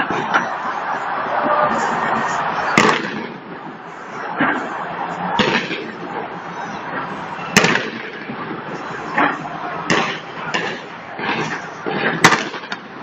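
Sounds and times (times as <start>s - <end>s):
crowd noise: 0.0s - 13.0s
fireworks bangs: 1.7s - 3.5s, 5.3s - 6.1s, 7.6s - 12.9s.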